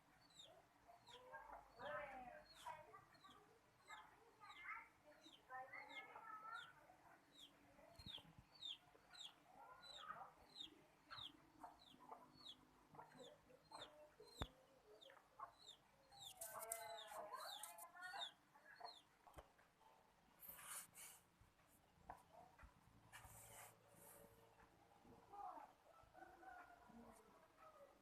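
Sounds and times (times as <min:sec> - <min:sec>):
chickens clucking: 0:07.4 - 0:20.0.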